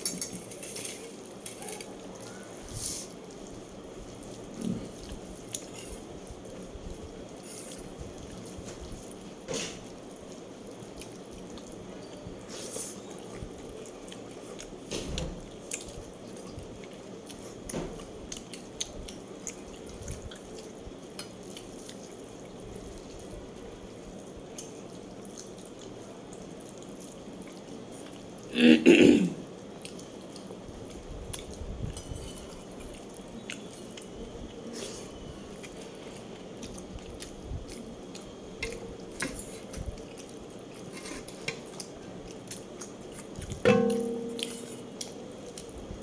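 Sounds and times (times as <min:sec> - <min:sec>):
wet chewing: 0:29.6 - 0:46.0.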